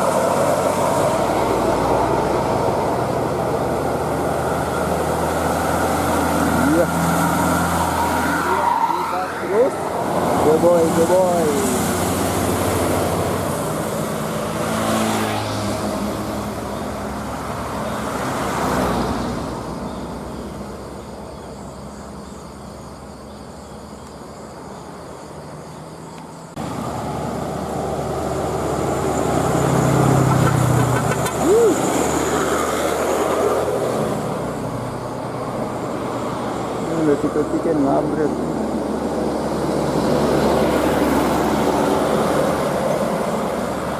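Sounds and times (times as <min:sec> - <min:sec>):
road traffic passing: 0:00.0 - 0:43.9.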